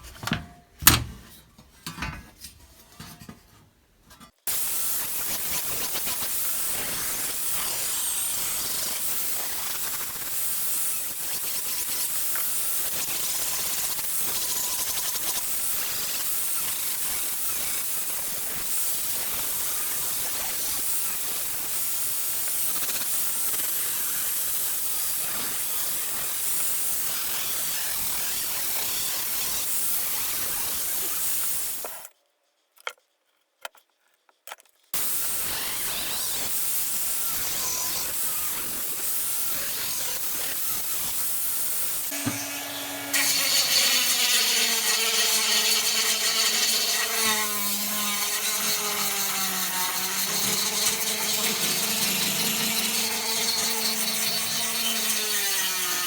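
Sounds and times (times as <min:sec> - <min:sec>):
hissing scrape on steel saw: 0:04.5 - 0:21.4, 0:35.0 - 0:56.0
power tool whining: 0:35.0 - 0:56.0.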